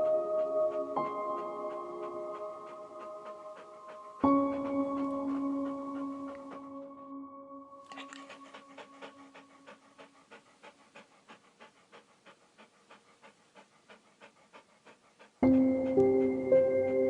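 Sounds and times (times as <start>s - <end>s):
animal panting: 0.0s - 7.0s, 7.9s - 17.0s
held music chord: 0.0s - 10.0s, 15.4s - 17.0s.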